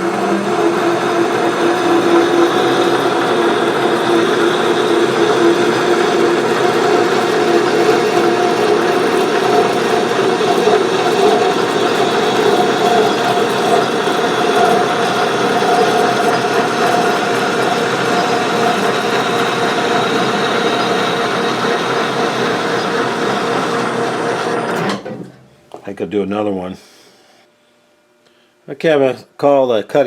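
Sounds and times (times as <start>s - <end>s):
metal lathe humming: 0.0s - 25.1s.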